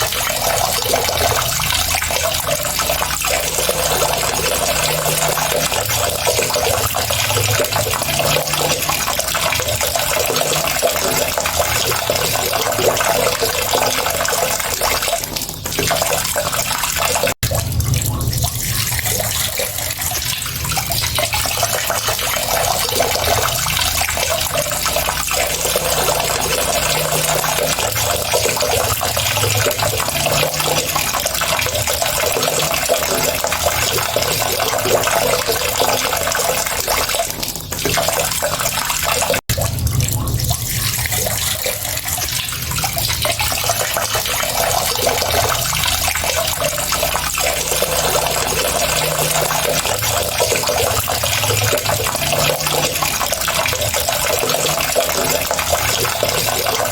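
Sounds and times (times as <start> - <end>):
water running: 0.0 - 56.9.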